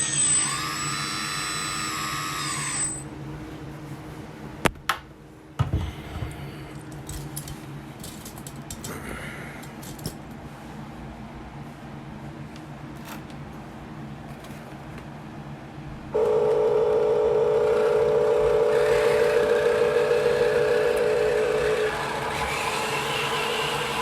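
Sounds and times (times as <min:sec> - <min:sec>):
small electric motor whining: 0:00.0 - 0:03.0, 0:17.4 - 0:24.0.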